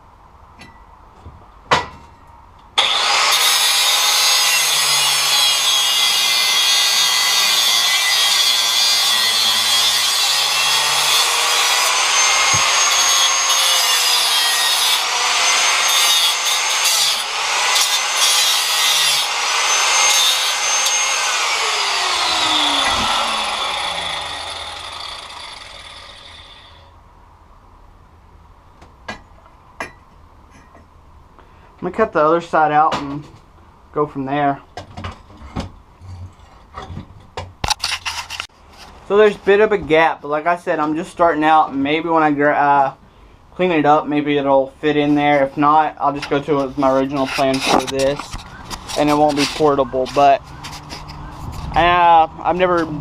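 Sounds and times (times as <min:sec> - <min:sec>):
angle grinder cutting steel pipe: 0:02.8 - 0:26.9, 0:46.2 - 0:51.2.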